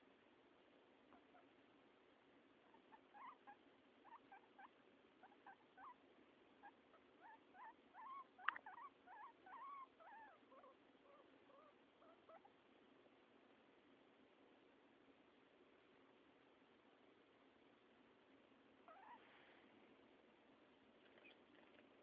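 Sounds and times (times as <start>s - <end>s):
guinea pig squeaking: 1.1s - 1.6s, 2.6s - 6.0s, 6.6s - 12.5s, 18.8s - 19.2s, 21.0s - 21.8s.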